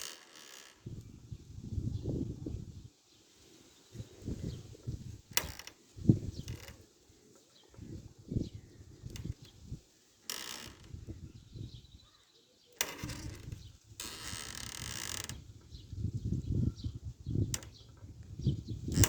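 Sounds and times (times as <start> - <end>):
door creaking on hinges: 0.0 - 0.9, 5.4 - 5.8, 6.4 - 6.8, 10.3 - 11.1, 12.8 - 15.4.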